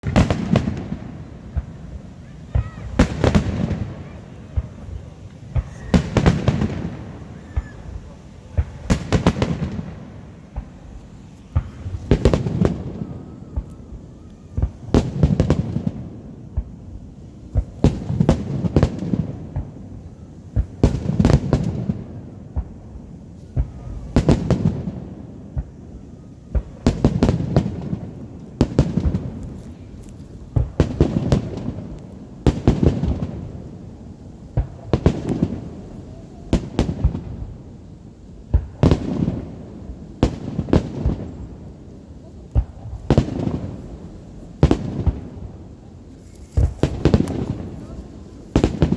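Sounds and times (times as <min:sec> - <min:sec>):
firework shells bursting: 0:05.5 - 0:19.8, 0:26.5 - 0:37.2, 0:40.2 - 0:48.9.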